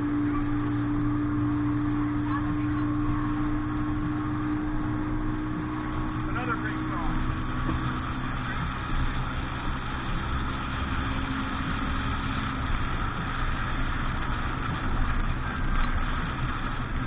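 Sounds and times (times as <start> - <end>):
motorboat engine running: 0.0 - 17.0.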